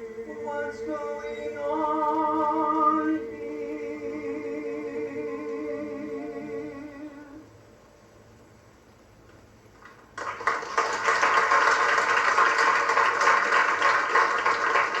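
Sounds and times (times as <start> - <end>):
audience applauding: 9.8 - 15.0.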